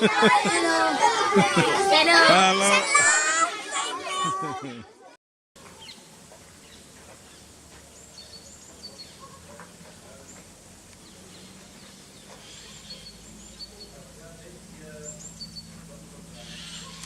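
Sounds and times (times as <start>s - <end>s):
low steady hum: 5.6s - 17.0s
small birds chirping: 5.6s - 17.0s.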